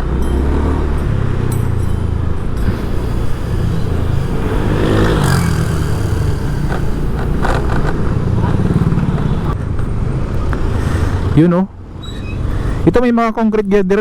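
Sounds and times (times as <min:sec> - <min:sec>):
vehicle engine passing close: 0:00.0 - 0:11.4
road traffic: 0:00.0 - 0:13.2.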